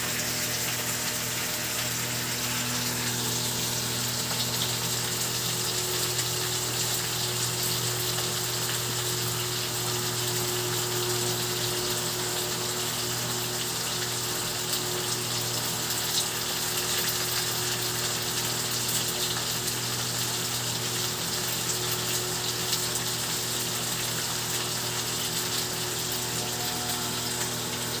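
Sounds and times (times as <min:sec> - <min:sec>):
running water: 0:00.0 - 0:28.0.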